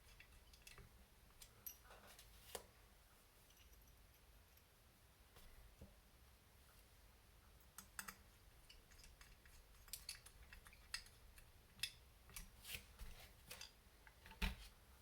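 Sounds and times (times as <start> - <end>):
small parts and tools clicking: 0.0 - 1.9, 7.7 - 12.6.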